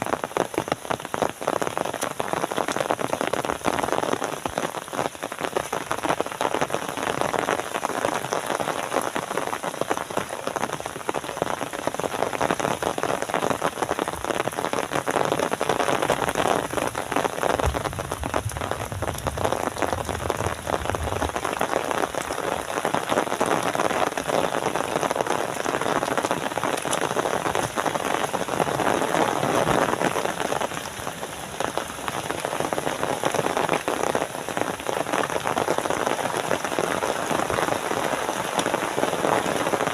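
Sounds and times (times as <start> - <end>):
heavy rain: 0.0 - 39.9
low rumble: 17.6 - 21.4.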